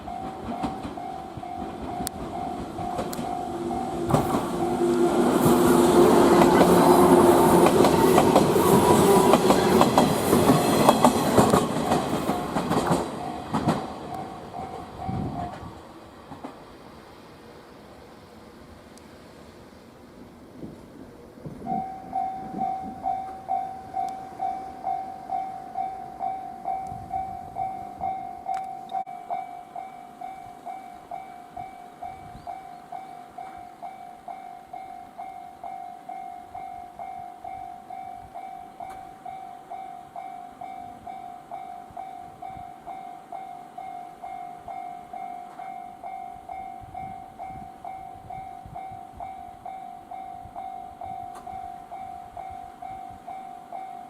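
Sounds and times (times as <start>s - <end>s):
level crossing alarm bell: 21.7s - 54.0s.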